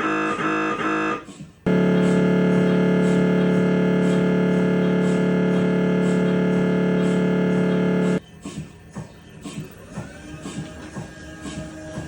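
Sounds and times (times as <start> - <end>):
mri scanner buzzing: 0.0 - 8.2.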